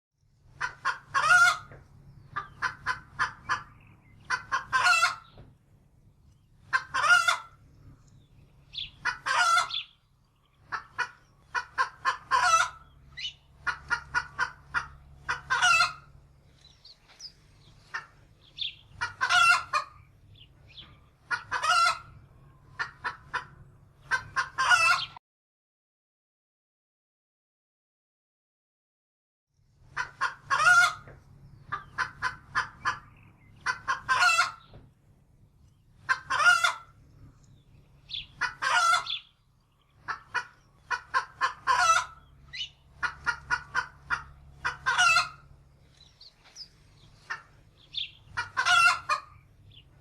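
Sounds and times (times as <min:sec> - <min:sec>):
hen cackling: 0:00.4 - 0:05.4, 0:06.5 - 0:07.7, 0:08.6 - 0:10.0, 0:10.6 - 0:25.2, 0:29.8 - 0:34.8, 0:35.9 - 0:37.1, 0:38.0 - 0:50.0.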